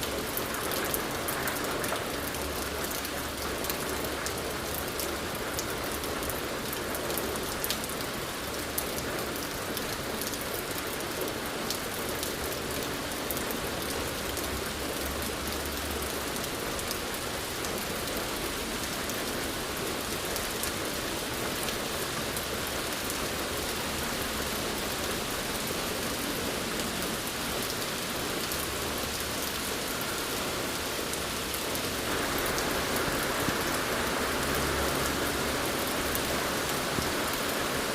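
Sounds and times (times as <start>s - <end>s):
rain patter: 0.0s - 37.9s.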